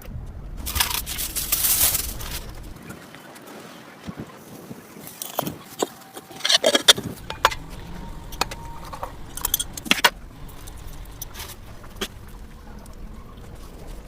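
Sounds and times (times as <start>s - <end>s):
kitchen utensils clinking: 5.2s - 12.1s.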